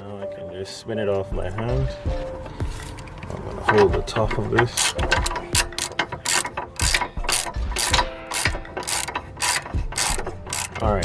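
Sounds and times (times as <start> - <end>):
socket ratchet clicking: 3.7 - 11.0.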